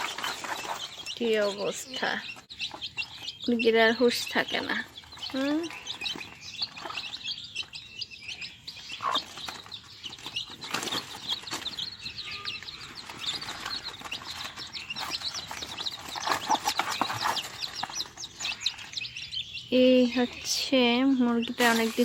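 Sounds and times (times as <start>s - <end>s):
hen wing-flapping and scuffling: 0.0s - 1.8s, 9.2s - 11.9s, 13.0s - 18.6s, 21.5s - 22.0s
chicks peeping: 0.0s - 22.0s.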